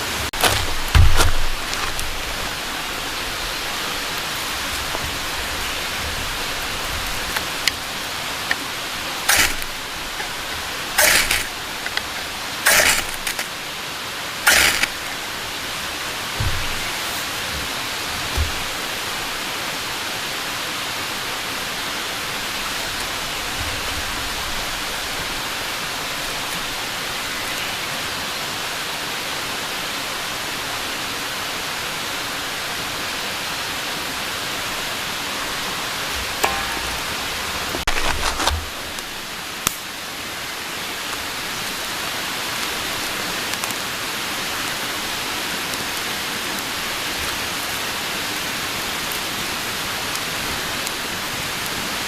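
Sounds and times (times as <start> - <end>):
steady hissing noise: 0.0 - 52.0
clicks and knocks: 36.1 - 38.7.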